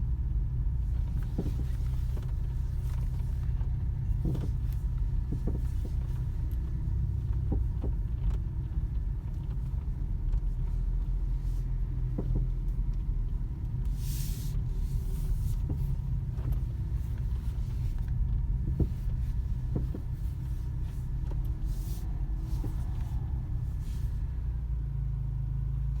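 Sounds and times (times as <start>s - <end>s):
low rumble of moving car: 0.0s - 26.0s
car suspension knocking: 1.0s - 8.4s, 12.0s - 12.6s, 18.5s - 21.6s.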